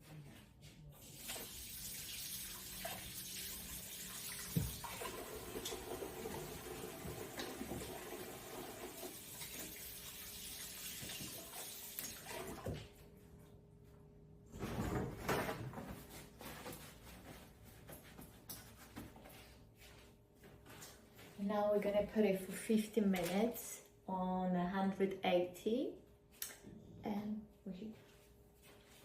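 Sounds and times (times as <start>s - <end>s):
water running from a tap: 1.0s - 12.8s.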